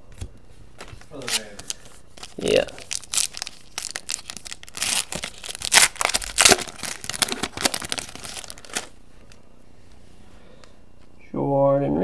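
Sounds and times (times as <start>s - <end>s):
foil wrapper tearing and crinkling: 1.2s - 9.0s.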